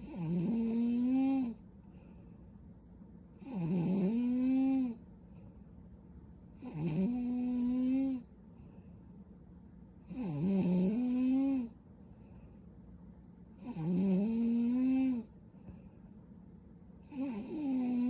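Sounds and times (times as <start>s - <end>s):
woman snoring: 0.0s - 1.6s, 3.4s - 5.0s, 6.6s - 8.3s, 10.1s - 11.8s, 13.6s - 15.3s, 17.1s - 18.0s.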